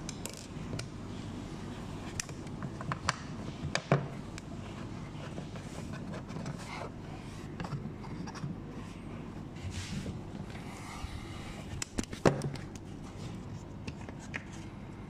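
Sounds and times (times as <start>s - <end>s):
clicks and knocks of parts: 0.0s - 0.9s
low steady hum: 0.0s - 15.0s.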